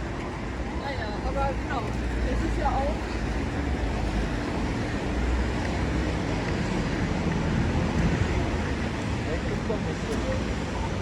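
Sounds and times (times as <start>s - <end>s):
traffic rumble: 0.0s - 11.0s.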